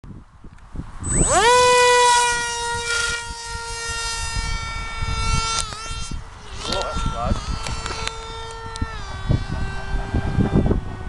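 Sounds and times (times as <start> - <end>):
model plane motor whining: 1.0 - 11.0.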